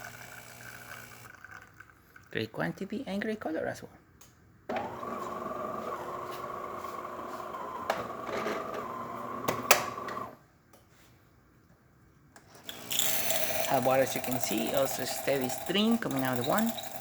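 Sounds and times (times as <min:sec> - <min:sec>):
espresso machine whirring: 0:00.0 - 0:01.4, 0:04.7 - 0:10.4, 0:12.7 - 0:17.0.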